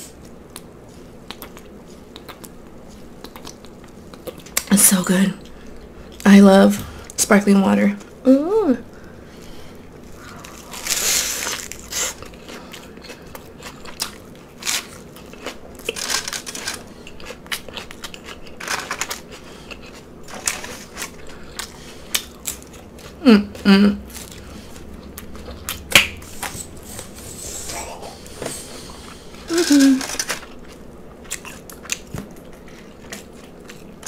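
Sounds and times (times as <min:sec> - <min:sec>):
chewing and crunching food: 0:00.1 - 0:04.7, 0:08.9 - 0:34.0
person humming: 0:08.3 - 0:08.8, 0:23.2 - 0:24.0, 0:27.5 - 0:28.3, 0:29.5 - 0:30.2.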